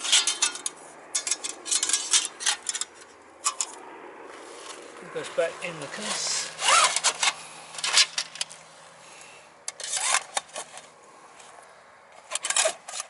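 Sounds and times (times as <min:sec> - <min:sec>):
metal pieces clinking and scraping: 0:00.0 - 0:03.8.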